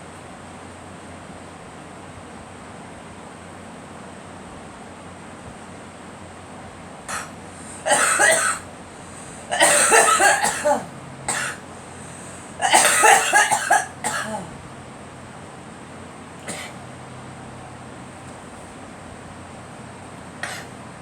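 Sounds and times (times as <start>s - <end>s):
girl coughing: 7.1s - 8.7s, 9.5s - 11.6s, 12.6s - 14.6s, 16.5s - 16.8s, 20.4s - 20.8s.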